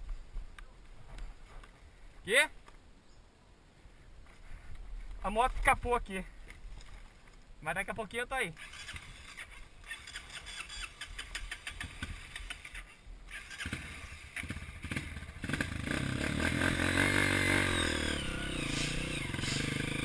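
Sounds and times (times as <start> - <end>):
motorcycle engine revving: 8.6 - 20.0.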